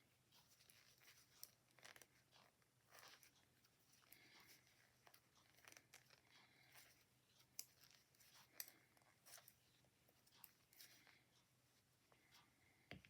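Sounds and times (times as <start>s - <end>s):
knitting needles clicking: 0.3s - 11.4s.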